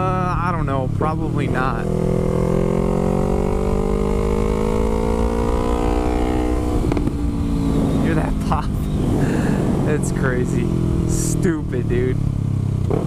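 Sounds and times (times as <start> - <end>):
motorcycle engine accelerating: 0.0 - 13.0
exhaust pop: 6.8 - 7.2.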